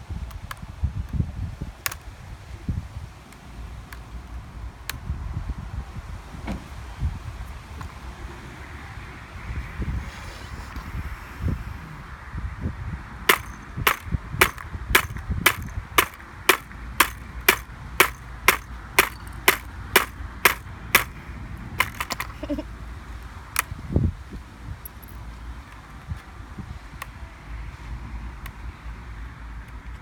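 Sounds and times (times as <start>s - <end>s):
hammer striking laptop: 13.3s - 21.1s, 21.8s - 22.2s.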